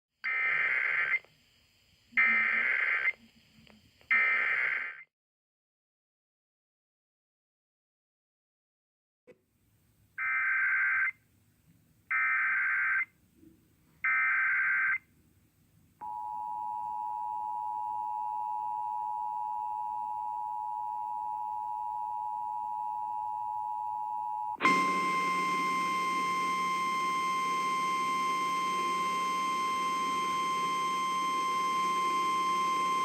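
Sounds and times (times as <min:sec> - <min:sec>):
loud single tone: 0:18.7 - 0:33.0
two-tone attention signal: 0:24.6 - 0:33.0.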